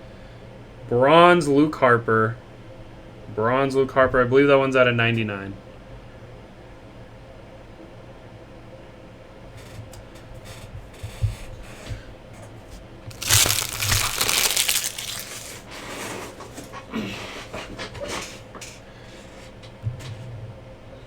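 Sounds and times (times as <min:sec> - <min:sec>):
wrappers crinkling and crumpling: 0:13.1 - 0:15.7.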